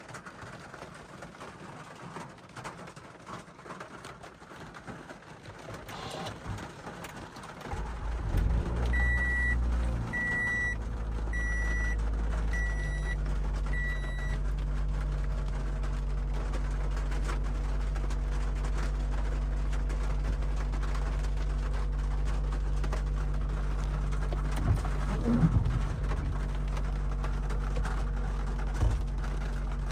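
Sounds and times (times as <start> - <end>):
rain patter: 0.0 - 29.9
car engine starting and idling: 5.8 - 29.9
dashboard chime beeping: 8.9 - 10.8, 11.4 - 14.4.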